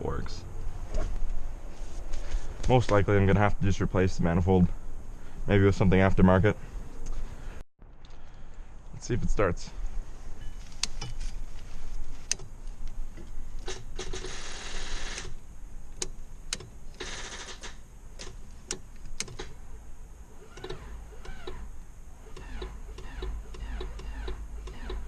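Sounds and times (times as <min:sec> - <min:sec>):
sharp clicks: 0:12.2 - 0:13.0, 0:15.0 - 0:19.6, 0:20.4 - 0:25.0
car engine cranking on starter: 0:20.4 - 0:25.0.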